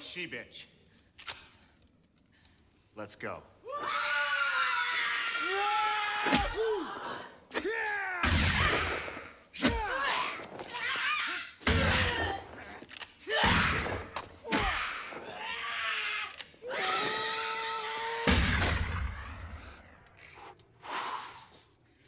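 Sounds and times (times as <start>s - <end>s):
shrieking wailing cries: 3.7s - 7.2s, 14.5s - 19.4s.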